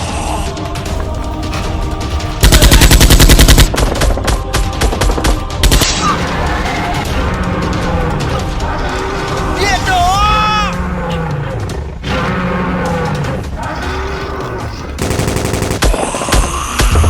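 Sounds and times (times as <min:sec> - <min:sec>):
background music: 0:00.0 - 0:17.0
automatic gunfire: 0:02.4 - 0:05.9, 0:15.0 - 0:16.1.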